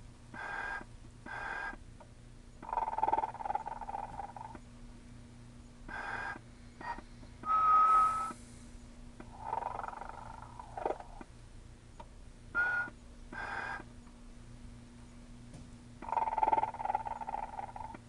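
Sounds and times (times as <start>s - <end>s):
faint steady hum: 0.0s - 18.0s
toy rasping snore: 0.4s - 1.8s, 5.9s - 6.4s, 9.3s - 11.2s, 13.4s - 13.8s
whistled tone: 7.4s - 8.4s.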